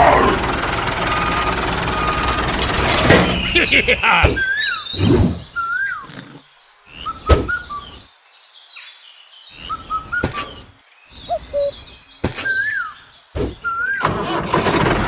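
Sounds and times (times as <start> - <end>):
short chirping whistles: 9.6 - 14.1
sharp knocks: 12.2 - 12.7.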